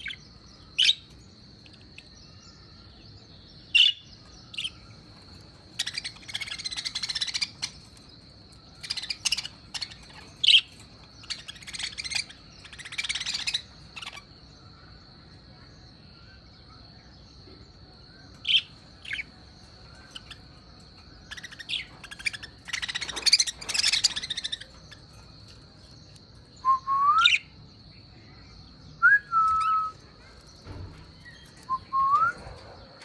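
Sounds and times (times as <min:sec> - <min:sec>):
lovebirds chirping and chattering: 0:00.0 - 0:33.0
rising whistled notes: 0:26.6 - 0:27.5, 0:29.0 - 0:30.0, 0:31.5 - 0:32.6.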